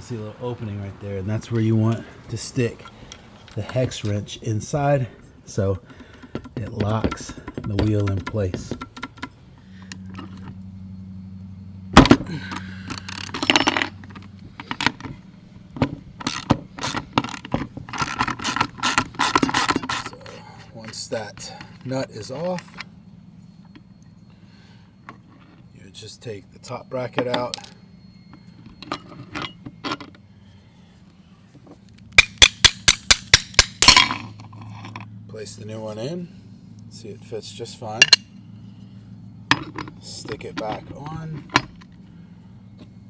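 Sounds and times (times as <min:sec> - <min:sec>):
low steady hum: 0:00.0 - 0:43.0
metal tools clinking: 0:12.0 - 0:30.2, 0:31.8 - 0:35.1, 0:37.6 - 0:38.4, 0:39.5 - 0:41.9
ratchet wrench clicking: 0:32.2 - 0:34.2.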